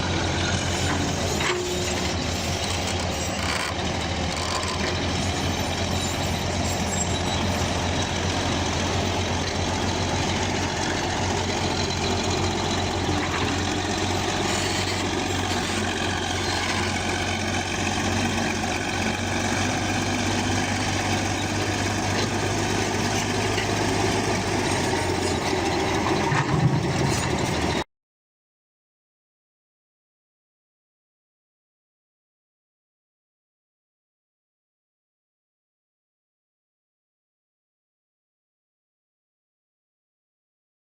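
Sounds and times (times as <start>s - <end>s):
bulldozer diesel engine running: 0.0s - 27.8s.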